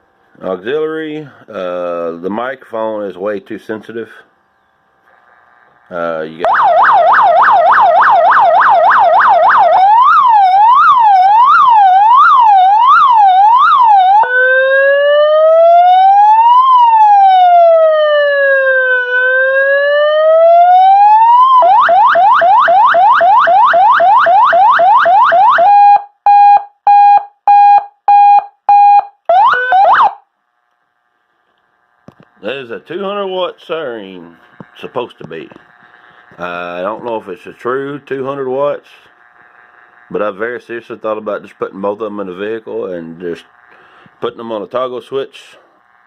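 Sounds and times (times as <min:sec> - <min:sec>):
police siren: 0:06.4 - 0:30.3.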